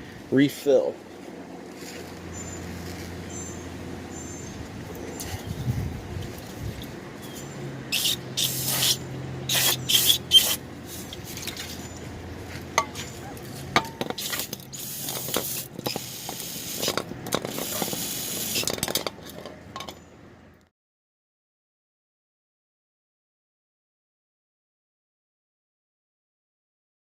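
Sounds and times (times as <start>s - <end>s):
aerosol can spraying: 7.9s - 10.6s, 14.2s - 18.6s.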